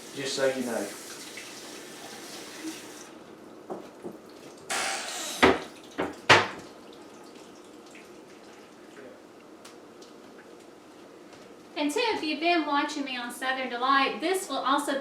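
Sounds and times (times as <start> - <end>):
running water: 0.0 - 3.2, 4.2 - 9.2.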